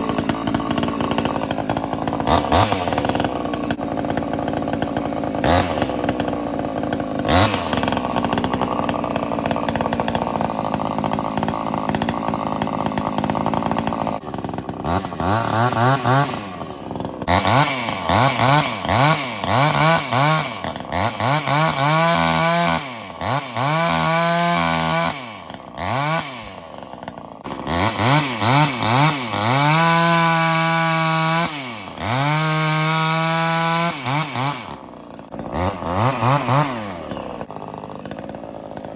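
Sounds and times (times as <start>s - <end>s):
chainsaw cutting wood: 0.0s - 38.9s
chainsaw revving: 0.0s - 38.9s.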